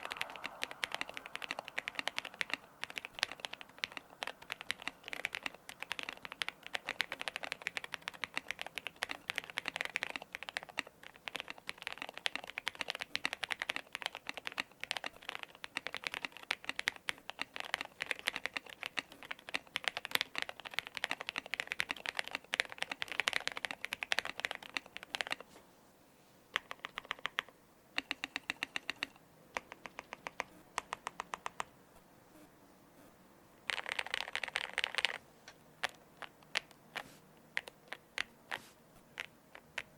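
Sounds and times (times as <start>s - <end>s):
mechanical keyboard typing: 0.0s - 25.4s, 26.6s - 31.7s, 33.6s - 35.2s, 35.8s - 38.4s, 39.1s - 39.9s.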